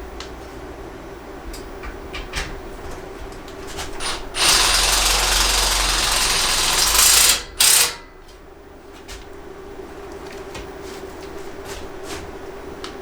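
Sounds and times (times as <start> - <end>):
power drill running: 4.0 - 8.2.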